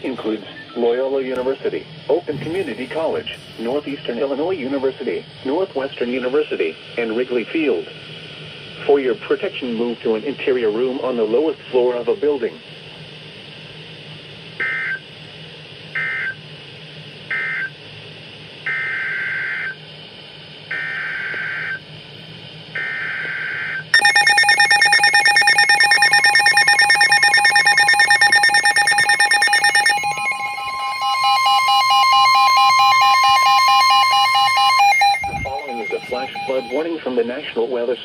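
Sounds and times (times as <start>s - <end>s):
pulsing electronic alarm: 22.8s - 36.9s
steady alert tone: 24.0s - 36.8s
warbling data bursts: 24.0s - 36.8s.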